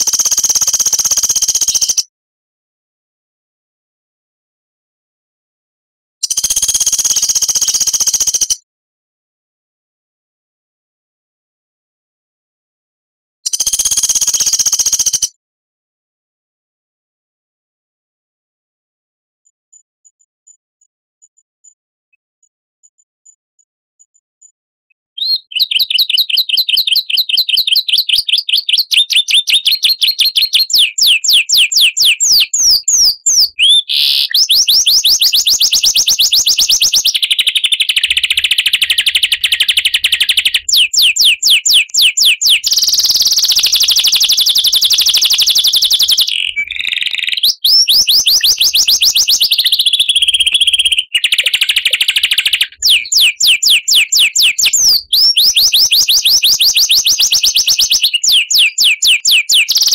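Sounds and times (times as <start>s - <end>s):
songbird chirps and trills: 25.2s - 59.9s.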